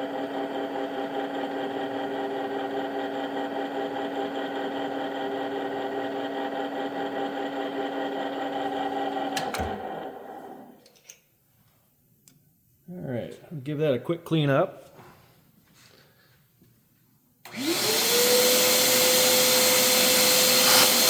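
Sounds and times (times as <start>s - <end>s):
machine spindle motor running: 17.5s - 21.0s.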